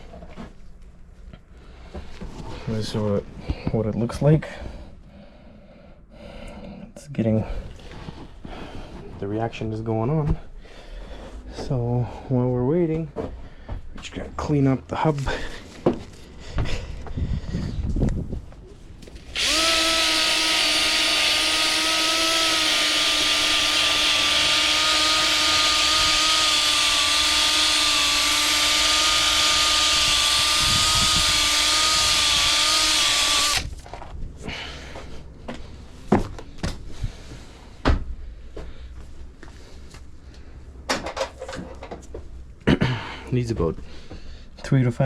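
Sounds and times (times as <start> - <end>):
handheld power tool running: 19.1 - 33.8.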